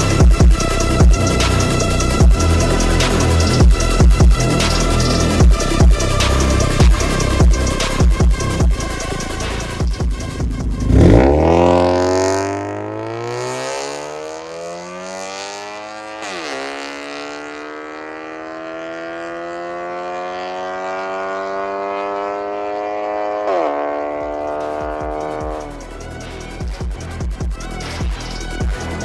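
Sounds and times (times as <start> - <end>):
electronic music with beat: 0.0 - 16.6, 24.2 - 29.0
car exhaust accelerating: 0.0 - 26.3.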